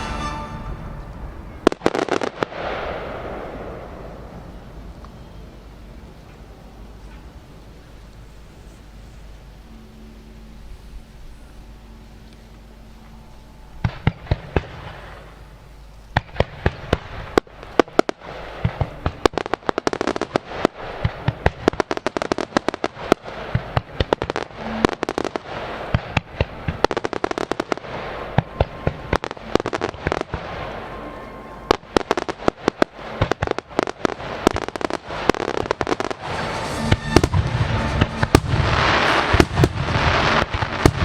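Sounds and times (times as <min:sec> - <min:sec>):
firework crackling: 0:00.0 - 0:05.1, 0:16.2 - 0:41.0
rapid barrage of firework bangs: 0:16.2 - 0:30.7, 0:31.7 - 0:41.0
firework shell bursts: 0:34.3 - 0:41.0.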